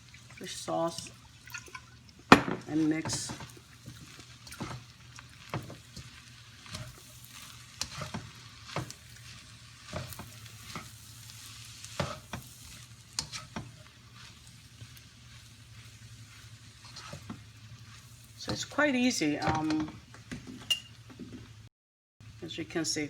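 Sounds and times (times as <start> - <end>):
fried rice sizzling in a pan: 0.0 - 21.6
utensil scraping and knocking pan: 7.8 - 9.0, 9.9 - 11.0, 12.0 - 12.5, 13.2 - 13.9, 16.8 - 17.4.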